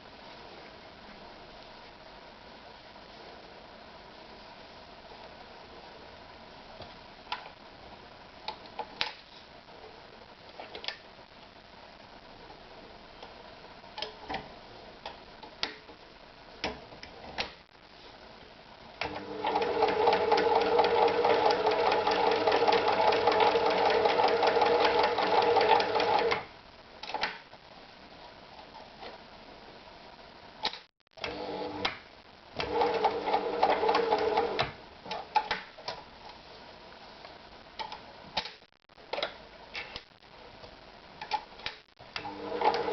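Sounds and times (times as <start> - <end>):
sewing machine sewing: 19.0 - 26.4, 32.6 - 34.7, 42.2 - 42.9.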